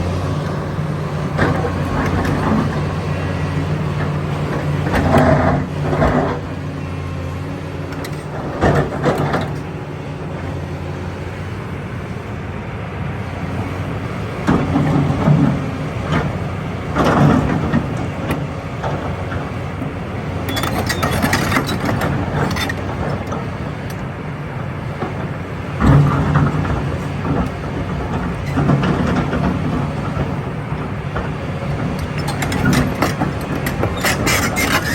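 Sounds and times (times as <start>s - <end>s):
excavator diesel engine: 0.0s - 34.9s
scraping and clanking: 1.2s - 3.0s, 20.5s - 23.5s, 25.8s - 34.9s.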